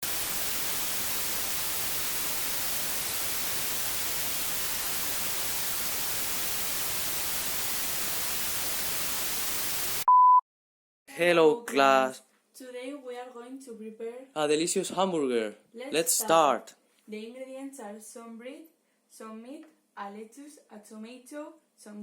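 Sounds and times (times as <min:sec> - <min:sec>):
steady static hiss: 0:00.0 - 0:10.1.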